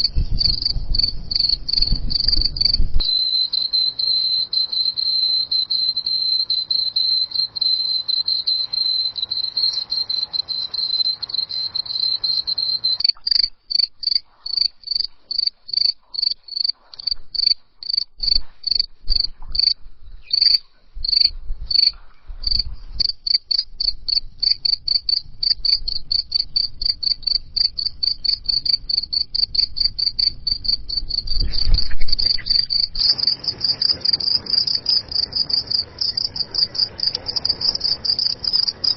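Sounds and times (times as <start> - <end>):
low rumble: 0.0 - 3.1
crickets chirping: 0.0 - 38.9.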